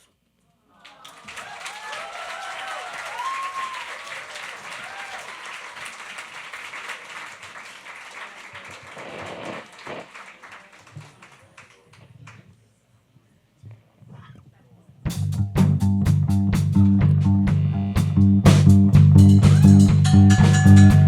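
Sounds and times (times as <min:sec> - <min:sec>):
audience applauding: 0:00.8 - 0:12.4
cheering and whoops: 0:00.9 - 0:05.9.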